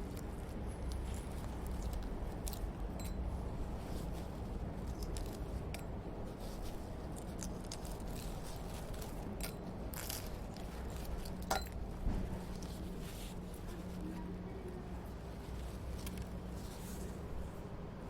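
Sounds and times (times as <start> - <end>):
low background hum: 0.0 - 18.0
glass clinking with ring: 3.0 - 3.3.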